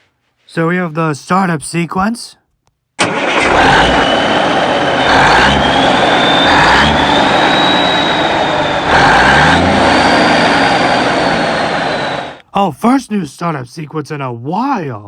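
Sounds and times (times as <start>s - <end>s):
recorded truck engine revving: 3.0s - 12.4s
thin high whine: 3.8s - 12.4s.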